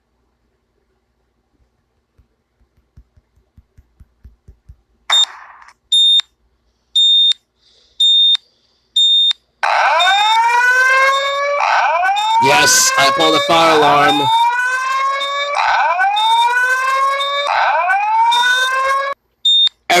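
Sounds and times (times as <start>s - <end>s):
wailing fire alarm: 9.0s - 20.0s.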